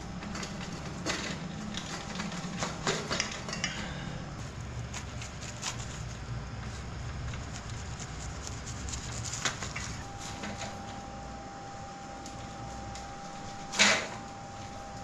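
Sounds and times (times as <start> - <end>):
pots and utensils clinking: 2.6 - 4.0.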